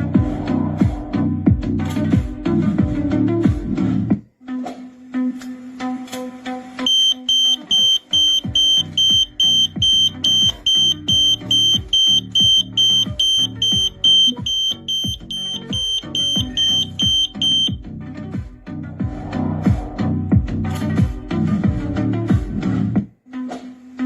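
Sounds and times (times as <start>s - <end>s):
background music with steady beat: 0.0s - 24.0s
smoke alarm beeping: 6.9s - 17.8s.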